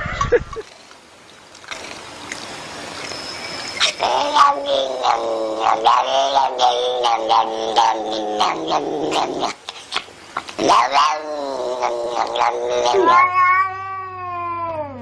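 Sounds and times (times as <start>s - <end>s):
cat yowling: 3.8s - 9.4s, 10.6s - 15.0s.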